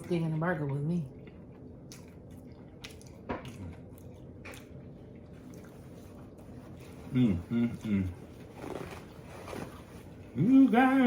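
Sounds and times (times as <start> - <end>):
people chewing with mouth smacks: 0.6 - 9.2.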